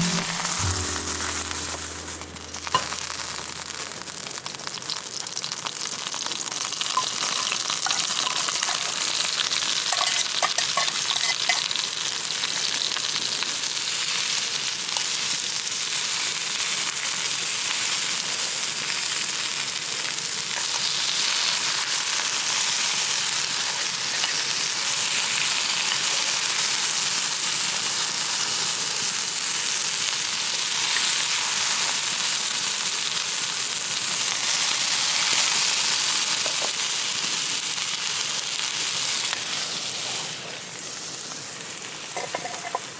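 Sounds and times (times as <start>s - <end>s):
food sizzling in a pan: 0.0s - 42.9s.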